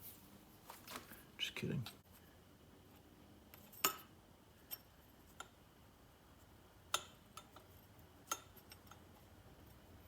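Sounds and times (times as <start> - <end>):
small parts clicking and tapping: 6.9 - 9.8.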